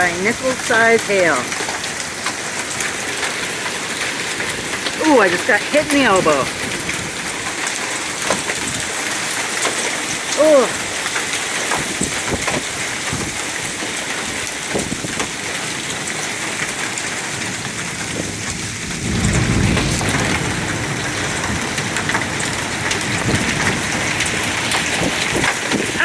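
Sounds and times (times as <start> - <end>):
hailstones ticking: 0.0 - 19.1, 20.6 - 26.0
heavy rain pouring: 0.0 - 26.0
low rumble of thunder: 17.2 - 25.9.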